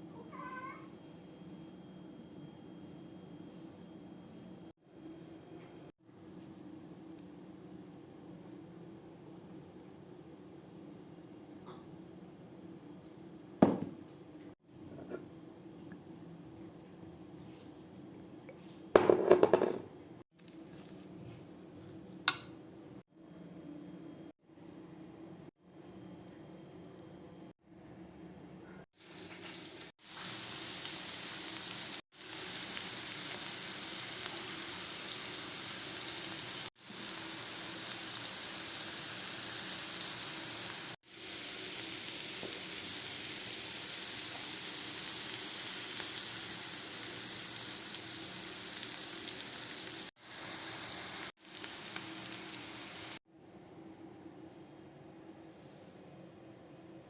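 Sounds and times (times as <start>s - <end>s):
hot oil sizzling in pan: 29.0s - 53.2s.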